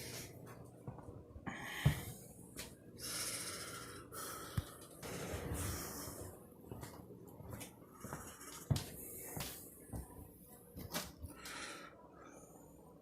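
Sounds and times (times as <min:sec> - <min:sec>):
man breathing heavily: 0:01.4 - 0:06.9, 0:07.8 - 0:10.0, 0:11.2 - 0:12.9.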